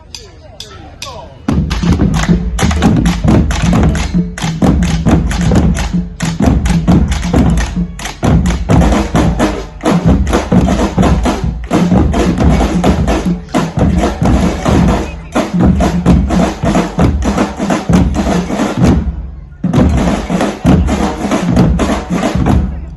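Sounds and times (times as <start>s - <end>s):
wood-block clacks: 0.1s - 16.3s
drumming ensemble: 0.1s - 22.9s.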